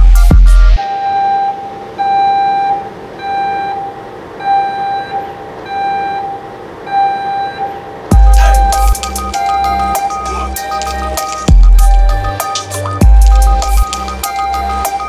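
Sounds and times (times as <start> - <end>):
hip-hop drum beat with bass: 0.0 - 0.8, 8.1 - 15.0
censor bleep tones: 0.9 - 15.0.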